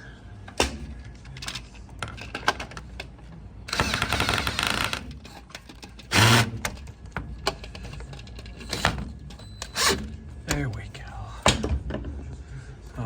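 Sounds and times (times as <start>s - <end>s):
cordless power driver buzzing: 3.7s - 5.2s, 6.1s - 6.7s.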